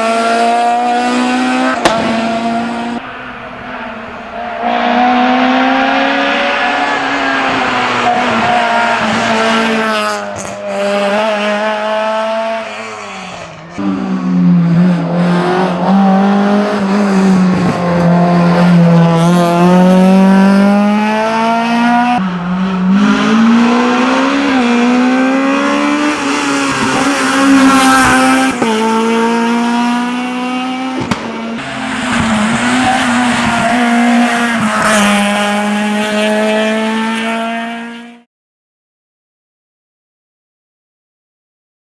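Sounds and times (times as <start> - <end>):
car engine revving hard: 0.0 - 38.3.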